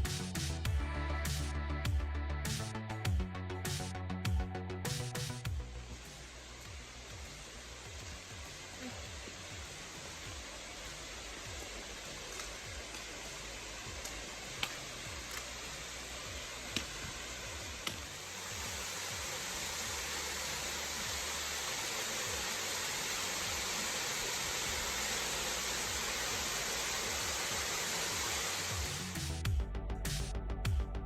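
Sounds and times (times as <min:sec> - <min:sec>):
rush of falling water: 0:06.9 - 0:29.3.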